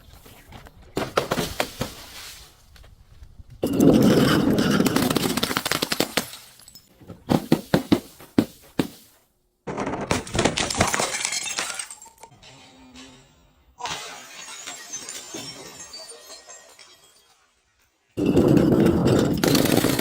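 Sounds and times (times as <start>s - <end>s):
crunching glass: 10.2s - 12.3s, 13.8s - 20.0s
sharp cracks of glass: 10.2s - 12.3s
glass bottle shattering: 10.4s - 12.3s, 13.8s - 17.6s.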